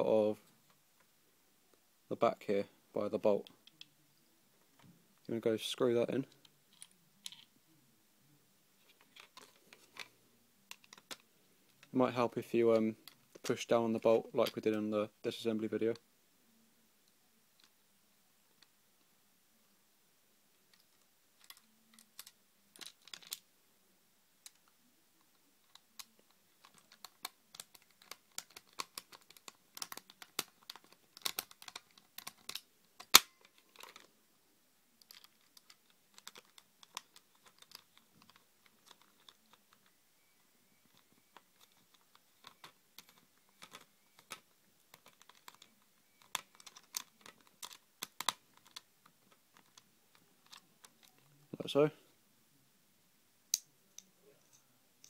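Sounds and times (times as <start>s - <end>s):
screwdriver and parts clicking: 25.7s - 34.1s, 35.0s - 39.9s.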